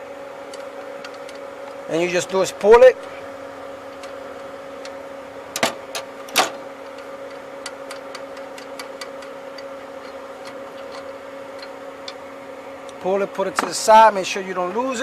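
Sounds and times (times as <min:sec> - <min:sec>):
steady low hum: 0:00.0 - 0:15.0
metal clicks and knocks of tools: 0:05.6 - 0:12.2.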